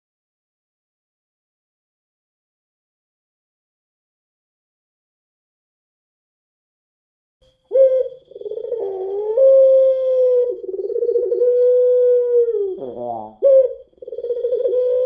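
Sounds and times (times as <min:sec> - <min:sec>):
dove cooing: 0:07.7 - 0:15.0.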